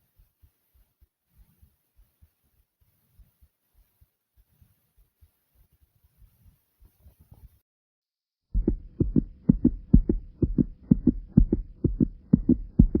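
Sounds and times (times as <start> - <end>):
faint steady hum: 8.6 - 13.0
fast loud heartbeat: 8.6 - 13.0.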